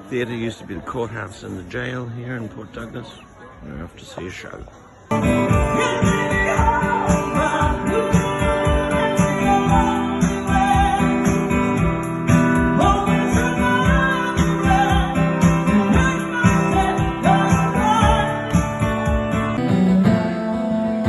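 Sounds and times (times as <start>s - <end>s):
upbeat music with steady beat: 5.1s - 21.0s.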